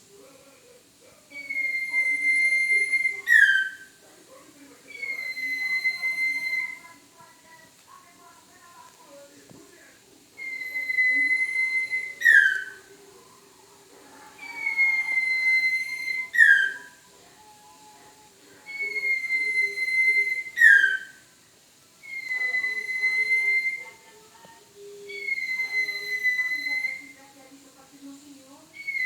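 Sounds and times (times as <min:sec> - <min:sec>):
owl lure whistle: 0:01.4 - 0:03.9, 0:04.9 - 0:06.9, 0:10.4 - 0:12.8, 0:14.4 - 0:18.0, 0:18.7 - 0:21.2, 0:22.0 - 0:24.0, 0:25.1 - 0:27.2.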